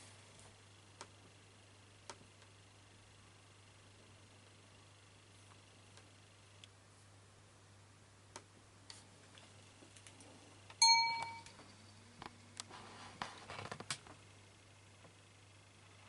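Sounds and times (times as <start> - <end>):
bright ding of struck object: 10.8 - 11.6.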